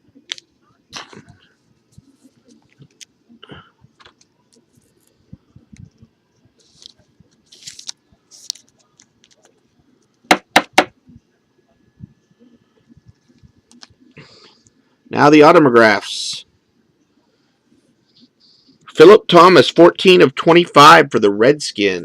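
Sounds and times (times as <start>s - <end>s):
plastic wrapper rustling: 6.6s - 9.6s
sharp knocks: 10.3s - 10.9s.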